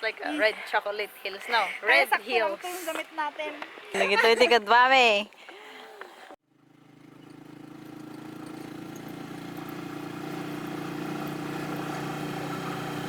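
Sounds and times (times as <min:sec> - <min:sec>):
vehicle engine running: 0:06.4 - 0:13.0.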